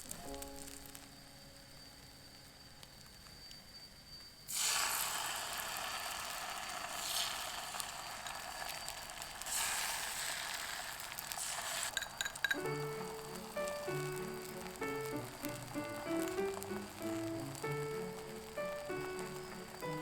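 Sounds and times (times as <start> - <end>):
light background music: 0.0 - 2.3, 12.6 - 20.0
food sizzling in a frying pan: 0.0 - 20.0
sharp clinks: 11.9 - 12.8.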